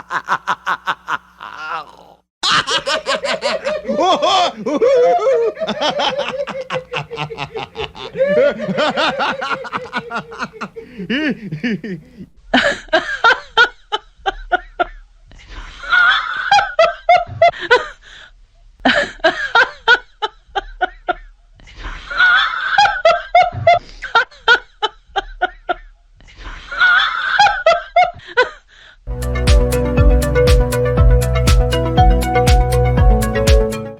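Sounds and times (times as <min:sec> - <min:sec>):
people laughing: 0:00.0 - 0:14.9
music: 0:29.1 - 0:33.9.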